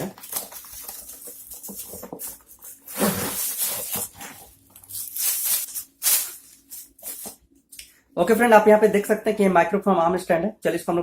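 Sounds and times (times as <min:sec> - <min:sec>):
packaging rustling and tearing: 0:00.0 - 0:07.4.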